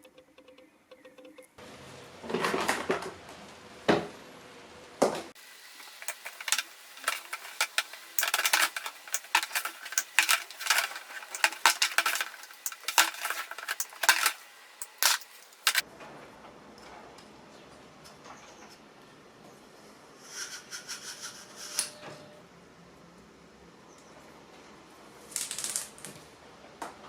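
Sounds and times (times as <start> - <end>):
small metal parts clinking: 5.7 - 15.8.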